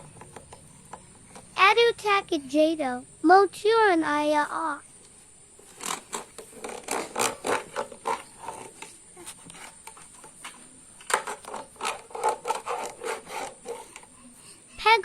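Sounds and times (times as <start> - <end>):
hand saw rasping: 5.7 - 10.2, 11.2 - 14.2.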